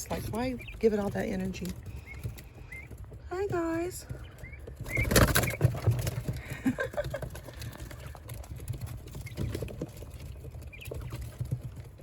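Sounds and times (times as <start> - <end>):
animals knocking in a hutch: 3.1 - 12.0.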